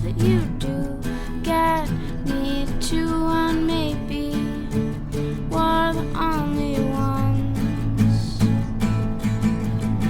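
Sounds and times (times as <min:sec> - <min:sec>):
person singing: 0:00.0 - 0:04.6, 0:05.5 - 0:08.6
acoustic guitar: 0:00.0 - 0:10.0.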